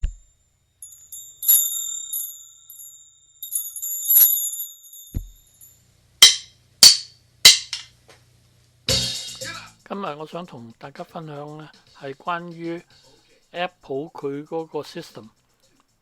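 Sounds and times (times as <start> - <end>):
high-pitched metallic chime tones: 0.8 - 5.7.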